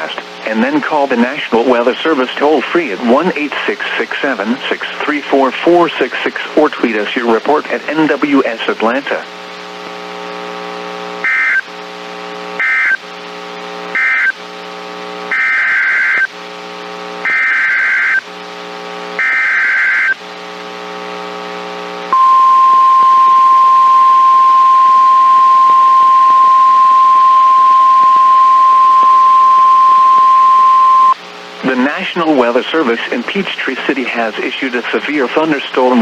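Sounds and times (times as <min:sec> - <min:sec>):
low buzz: 0:22.0 - 0:31.3
loud steady alarm tone: 0:22.1 - 0:31.2
screeching data bursts: 0:22.2 - 0:31.2.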